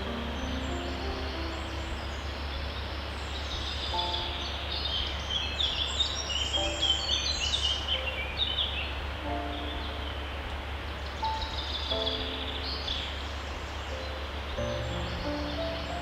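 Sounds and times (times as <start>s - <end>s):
songbirds chirping: 0.0s - 16.0s.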